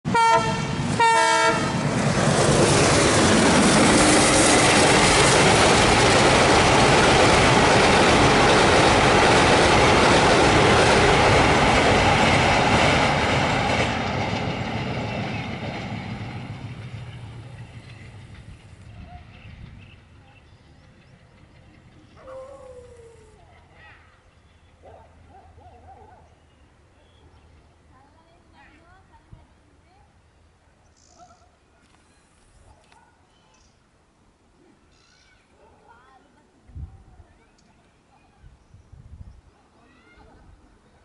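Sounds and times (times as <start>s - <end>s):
train rumbling across bridge: 0.0s - 25.3s
train horn: 0.1s - 1.8s.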